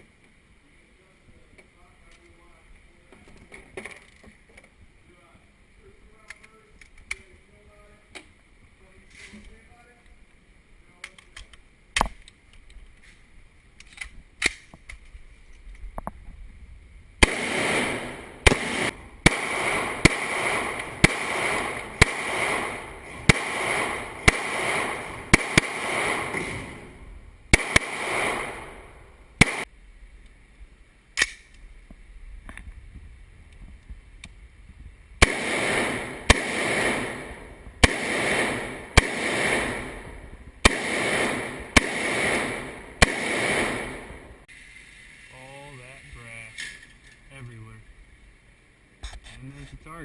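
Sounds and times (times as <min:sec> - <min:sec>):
gunshots with ringing tails: 0:17.2 - 0:29.7, 0:35.2 - 0:44.4.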